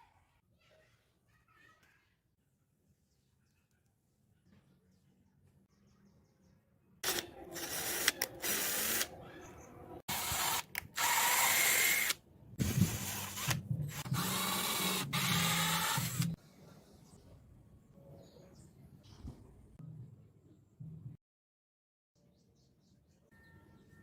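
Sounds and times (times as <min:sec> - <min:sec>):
small motor whirring in bursts: 0:10.1 - 0:16.4.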